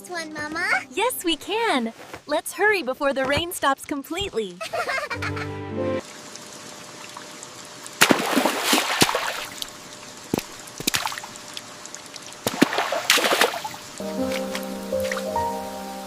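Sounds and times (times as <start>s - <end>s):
light rain hiss: 6.0s - 16.0s
water splashing: 6.2s - 15.4s.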